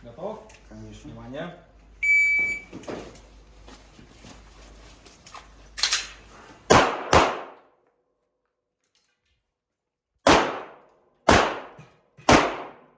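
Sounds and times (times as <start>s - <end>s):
pistol shots: 6.7s - 7.6s, 10.2s - 12.9s.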